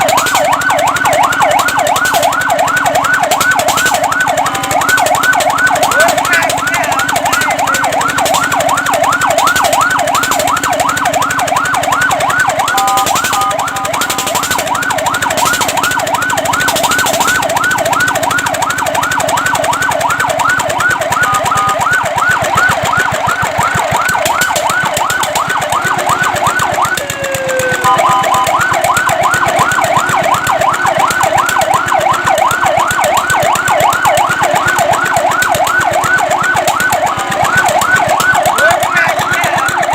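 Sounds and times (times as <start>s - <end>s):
fire truck siren yelp: 0.0s - 39.9s.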